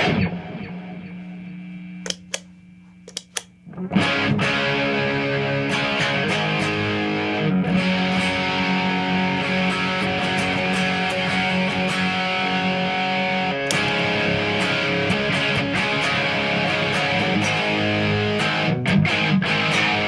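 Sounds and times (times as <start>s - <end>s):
sharp clicks: 2.0s - 3.5s
distorted electric guitar riff: 3.1s - 20.0s.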